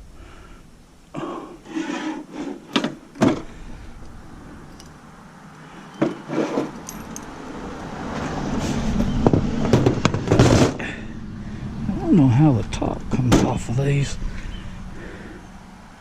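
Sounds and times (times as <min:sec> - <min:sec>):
metal power supply knocking and rattling: 0:09.3 - 0:10.8.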